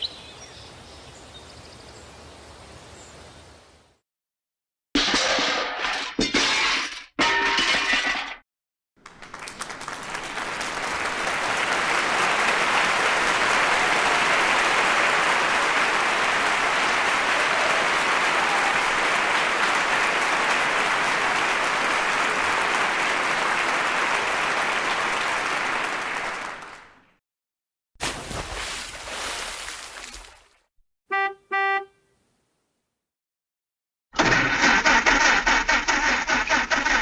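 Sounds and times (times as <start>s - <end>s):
large crowd applauding: 9.0s - 27.0s.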